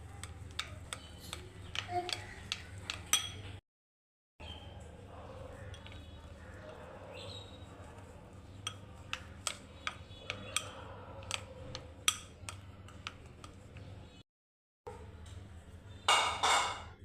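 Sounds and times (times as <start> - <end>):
utensils knocking against dishware: 0.2 - 3.6, 16.1 - 17.0.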